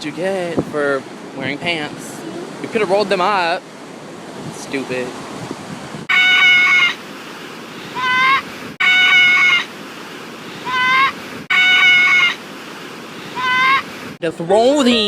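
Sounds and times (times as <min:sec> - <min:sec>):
surf: 0:00.0 - 0:15.0
seagull calls: 0:06.1 - 0:07.0, 0:07.7 - 0:09.8, 0:10.4 - 0:12.5, 0:13.1 - 0:14.1.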